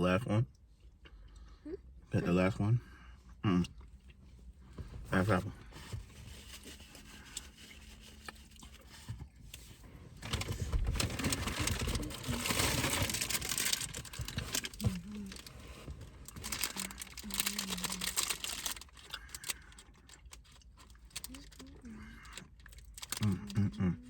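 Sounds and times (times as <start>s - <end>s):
plastic wrapping crinkling: 10.2s - 23.3s.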